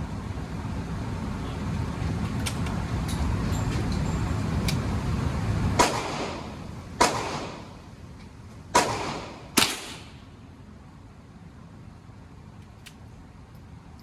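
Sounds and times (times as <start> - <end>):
steady low rumble: 0.0 - 14.0
gunshots with ringing tail: 5.8 - 7.7, 8.7 - 10.1.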